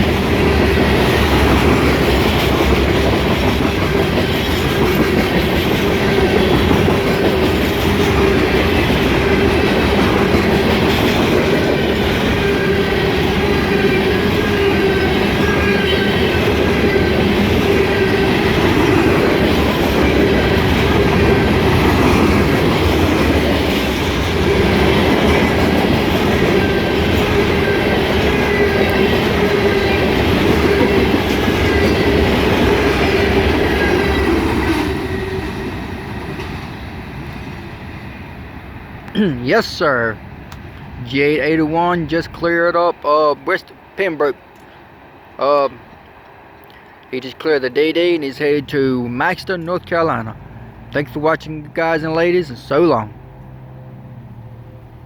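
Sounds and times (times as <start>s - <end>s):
wheels clacking over rail joints: 0.0s - 37.9s.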